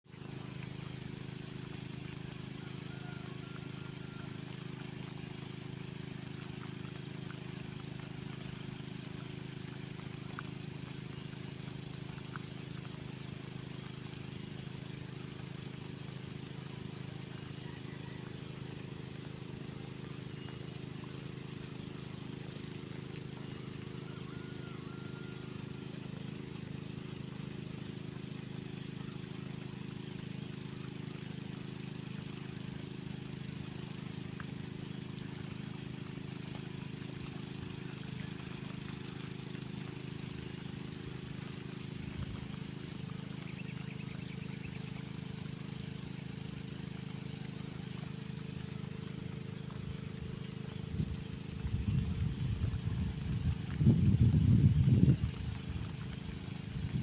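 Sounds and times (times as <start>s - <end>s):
sprinkler spraying water: 0.1s - 57.0s
steady low hum: 34.2s - 57.0s.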